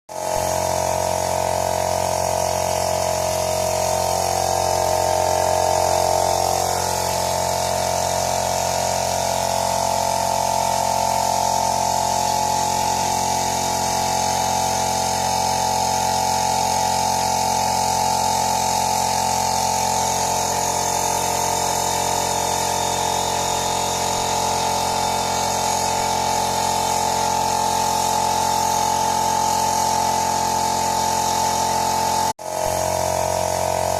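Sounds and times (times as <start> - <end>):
two-stroke engine idling: 0.2 - 17.0.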